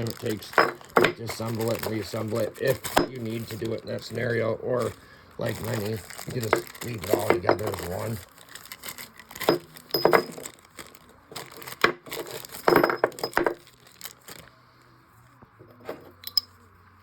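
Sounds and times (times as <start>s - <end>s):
metal pieces clinking and knocking: 0.0s - 2.0s, 9.4s - 10.5s, 11.8s - 13.7s, 15.9s - 16.5s.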